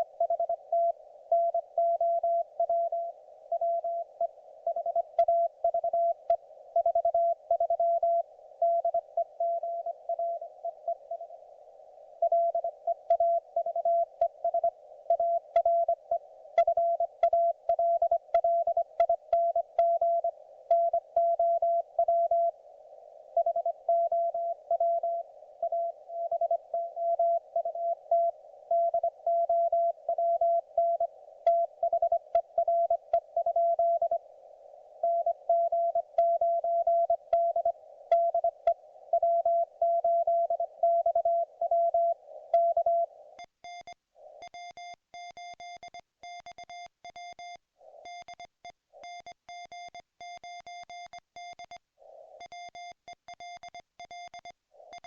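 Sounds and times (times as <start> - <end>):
morse code beeps: 39.2 - 51.8, 52.4 - 55.0.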